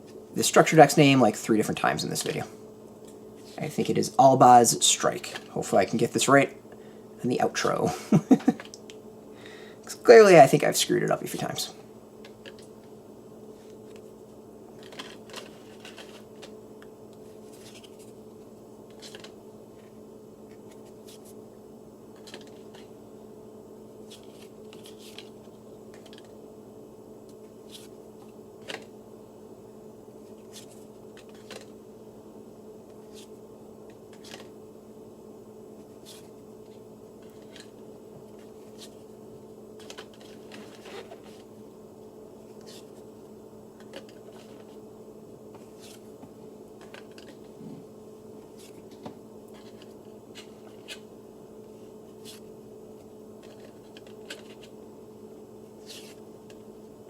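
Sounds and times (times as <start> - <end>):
steady low hum: 0.0 - 57.0
cards sliding and flicking: 14.8 - 19.9, 22.1 - 22.9, 24.0 - 26.4, 32.9 - 34.5, 35.8 - 39.0, 42.5 - 43.0, 53.4 - 54.7, 55.8 - 56.6.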